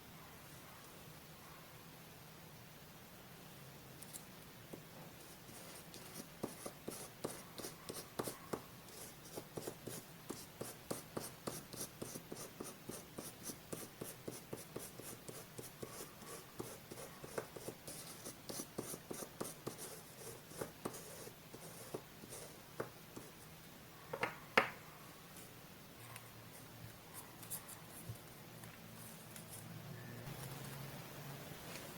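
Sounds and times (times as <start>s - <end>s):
scratching on paper: 5.2s - 23.4s.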